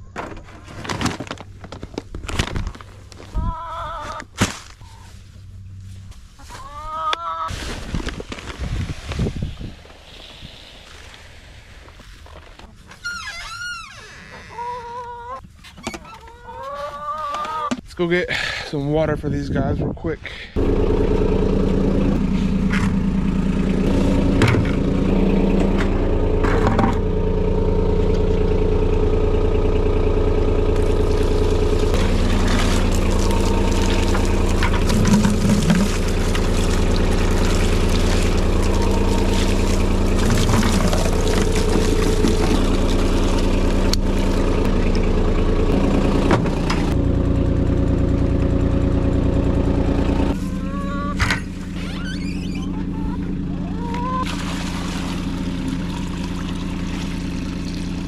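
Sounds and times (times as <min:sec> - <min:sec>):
vehicle engine running: 0:00.0 - 0:06.6, 0:20.6 - 0:58.0.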